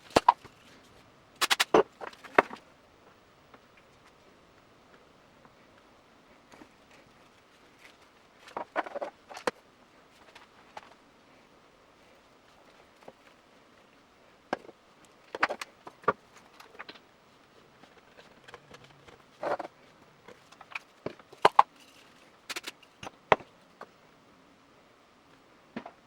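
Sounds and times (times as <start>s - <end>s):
tools and plastic parts clicking: 1.4s - 2.6s, 20.3s - 23.4s.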